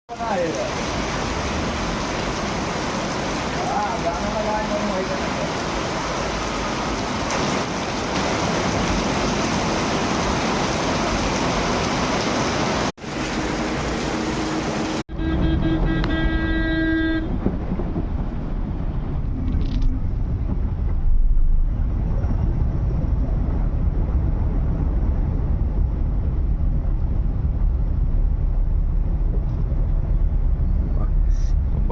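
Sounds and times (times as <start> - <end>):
heavy rain hissing: 0.1 - 15.0
low traffic rumble: 0.2 - 31.9
vehicle horn honking: 15.1 - 17.4.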